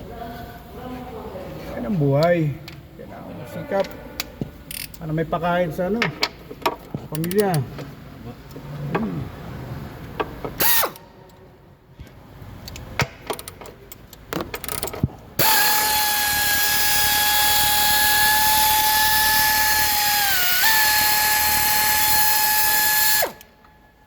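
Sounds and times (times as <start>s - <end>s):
tool clicks and knocks: 6.0s - 7.9s
power tool high whine: 15.4s - 23.5s.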